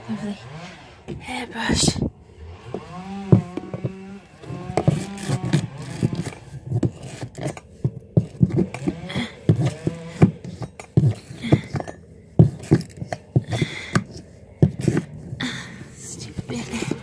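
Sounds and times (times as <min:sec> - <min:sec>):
hairbrush knocking and scraping: 0:02.7 - 0:17.0
person humming with strain: 0:08.8 - 0:10.2.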